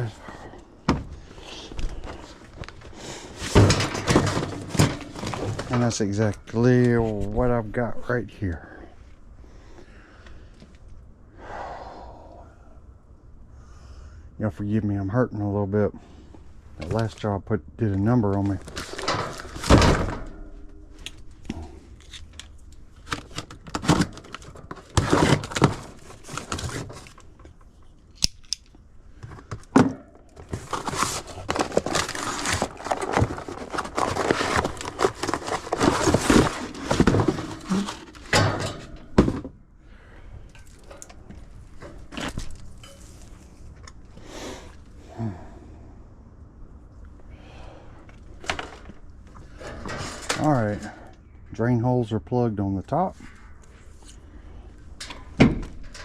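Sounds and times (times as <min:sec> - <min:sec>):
packaging crinkling and tearing: 0:30.4 - 0:38.3.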